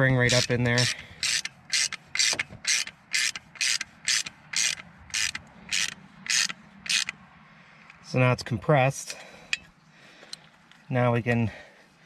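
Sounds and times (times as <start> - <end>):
socket ratchet clicking: 0.0 - 7.2.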